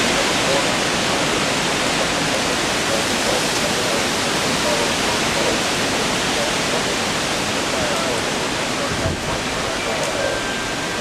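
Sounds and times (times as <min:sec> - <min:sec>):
strong wind rushing: 0:07.0 - 0:11.0.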